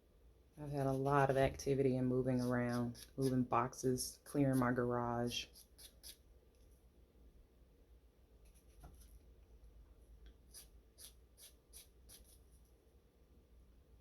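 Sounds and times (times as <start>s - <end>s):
nail file scratching: 2.2s - 3.5s, 5.3s - 6.2s, 10.5s - 12.5s.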